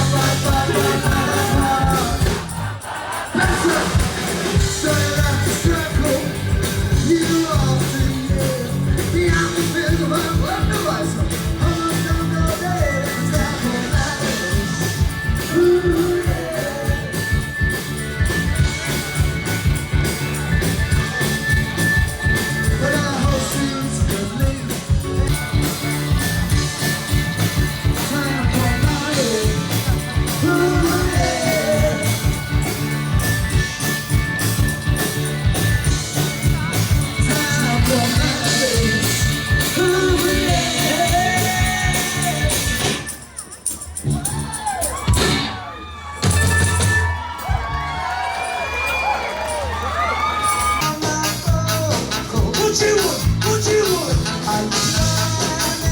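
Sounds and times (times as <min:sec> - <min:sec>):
rock music with singing: 0:00.0 - 0:55.9.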